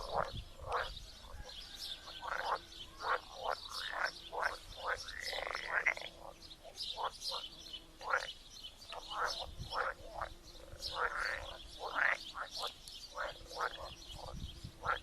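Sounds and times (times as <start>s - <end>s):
frogs croaking: 0.0s - 15.0s.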